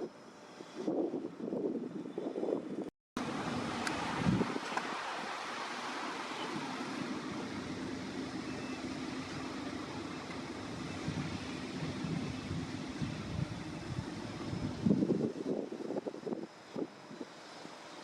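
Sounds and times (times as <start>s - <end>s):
wind noise on microphone: 0.0s - 17.9s
outdoor background noise: 0.0s - 18.0s
motor vehicle hum: 3.2s - 15.6s
road traffic: 3.2s - 18.0s.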